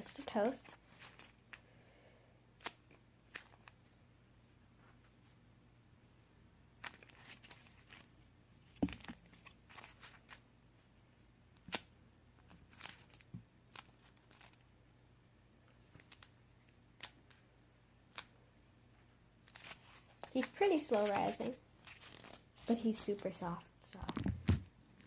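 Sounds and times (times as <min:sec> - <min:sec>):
squishy toy crinkling: 0:11.6 - 0:14.6.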